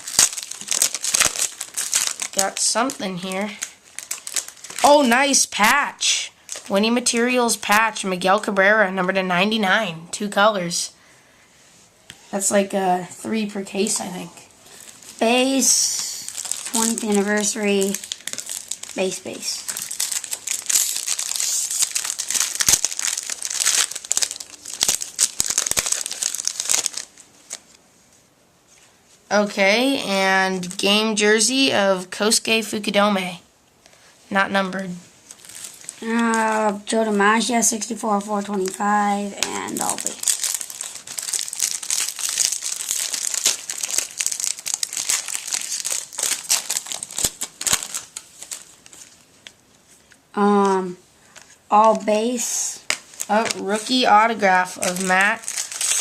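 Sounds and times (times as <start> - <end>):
wrapper tearing and crinkling: 0.0 - 5.8, 6.4 - 7.3, 14.7 - 27.8, 35.2 - 36.9, 39.4 - 50.2, 51.3 - 56.0.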